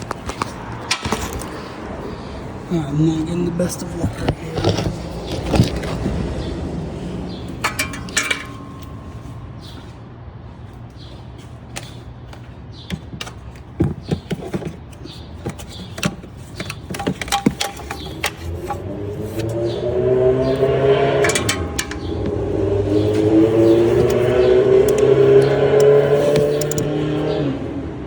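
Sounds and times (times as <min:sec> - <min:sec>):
tools clinking on metal parts: 0:07.5 - 0:09.3, 0:15.5 - 0:19.7, 0:20.5 - 0:27.1.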